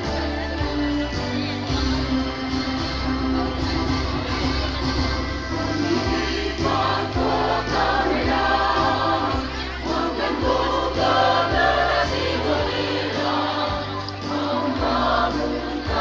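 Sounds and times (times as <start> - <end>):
instrumental accompaniment: 0.0 - 16.0
choir singing in unison: 5.3 - 16.0.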